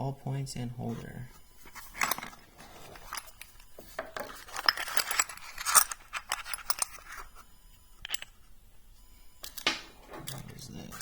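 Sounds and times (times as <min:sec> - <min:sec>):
metal parts clinking: 0:01.7 - 0:07.4, 0:08.0 - 0:08.5, 0:09.4 - 0:11.0.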